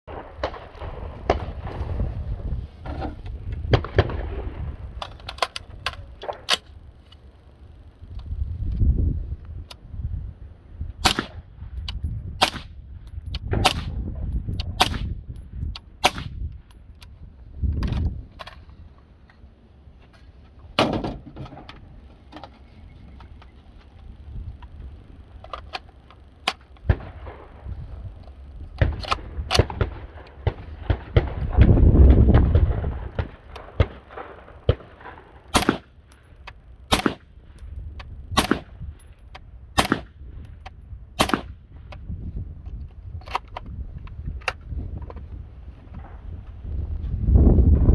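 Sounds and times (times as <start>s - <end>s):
suppressed rifle shots: 0.1s - 7.0s, 11.0s - 12.8s, 13.4s - 15.3s, 16.0s - 16.5s, 25.5s - 40.2s, 41.2s - 42.0s
low rumble: 0.1s - 19.0s, 26.7s - 47.9s.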